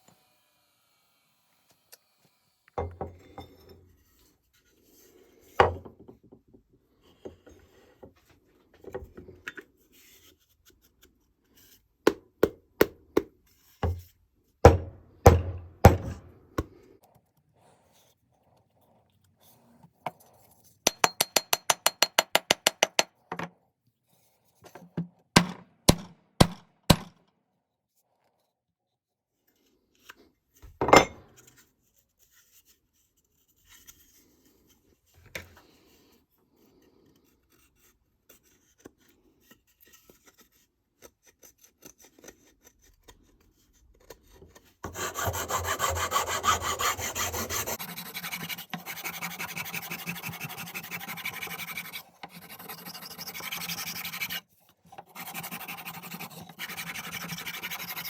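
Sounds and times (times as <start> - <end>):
scraping rasp: 36.6 - 58.0.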